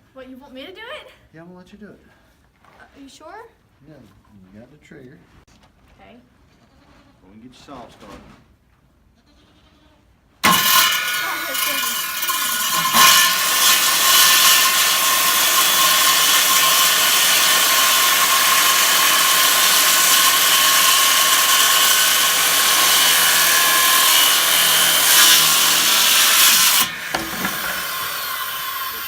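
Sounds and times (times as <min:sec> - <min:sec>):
circular saw cutting wood: 0:10.4 - 0:29.0.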